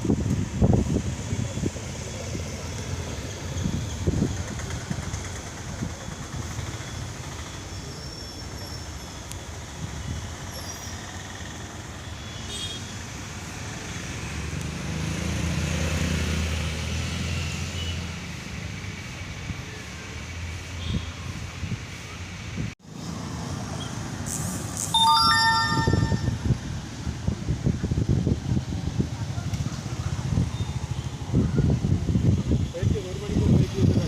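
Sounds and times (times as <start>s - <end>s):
road traffic rumble: 0.0s - 24.9s, 26.2s - 34.0s
faint short high notes: 25.0s - 26.5s.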